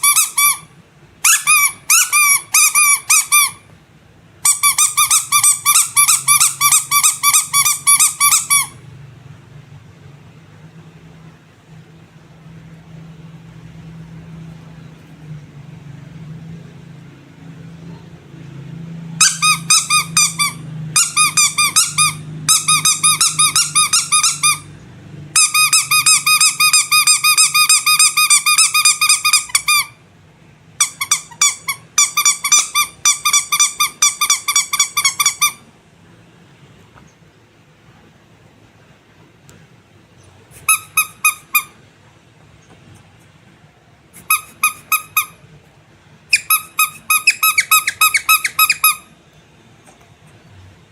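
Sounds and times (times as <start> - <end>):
squeaky rubber toy squeaking: 0.0 - 3.7, 4.4 - 8.9, 19.2 - 30.0, 30.8 - 35.7, 40.5 - 41.8, 44.1 - 45.5, 46.3 - 49.2
faint low hum: 0.0 - 50.9.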